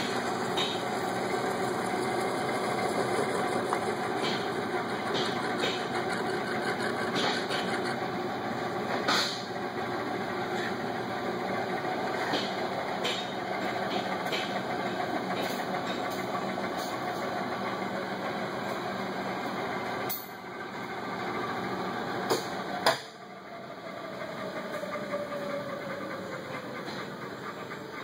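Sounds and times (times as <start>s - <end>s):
lathe whine: 0.0s - 28.0s.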